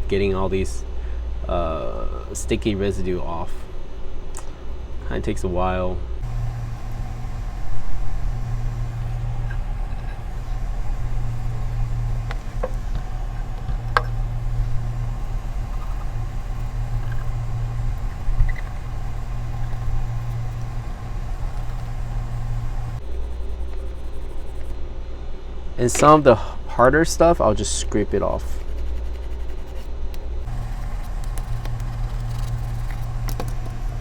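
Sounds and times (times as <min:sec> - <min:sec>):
low machine hum: 0:00.0 - 0:34.0.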